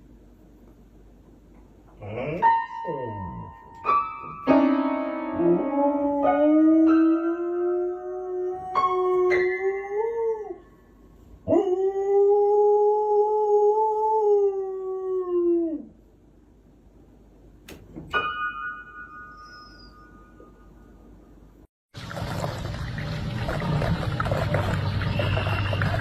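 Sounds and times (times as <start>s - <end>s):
dog howling: 5.4s - 10.6s.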